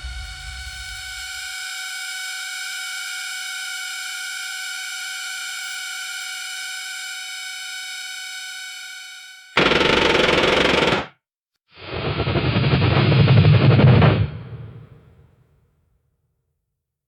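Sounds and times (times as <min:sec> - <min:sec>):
high-pitched buzzing tone: 0:00.0 - 0:11.0.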